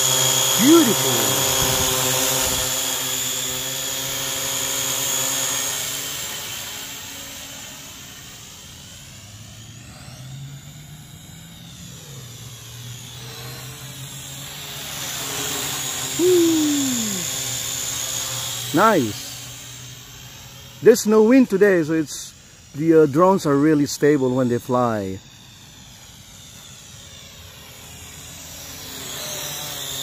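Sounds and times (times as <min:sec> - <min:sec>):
drone propellers buzzing: 0:00.0 - 0:21.4, 0:25.2 - 0:30.0
short falling tone: 0:16.2 - 0:17.3.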